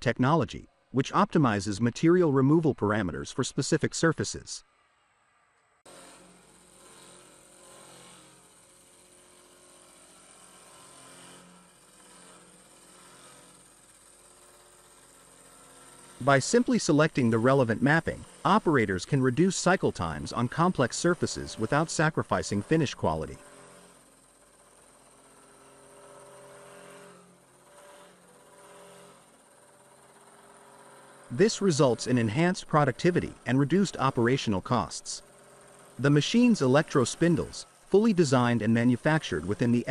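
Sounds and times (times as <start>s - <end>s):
machine whir: 4.6s - 39.9s
machining centre hum and whine: 15.6s - 23.8s.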